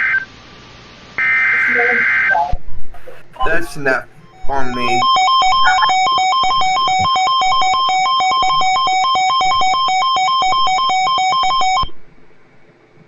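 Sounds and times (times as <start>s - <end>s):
two-pitch electronic alert tone: 4.2s - 11.9s.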